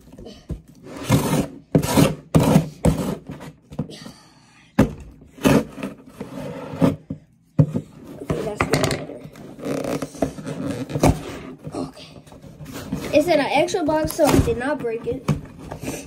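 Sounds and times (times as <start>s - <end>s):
scissors cutting cardboard: 0.8s - 3.6s, 5.4s - 7.1s.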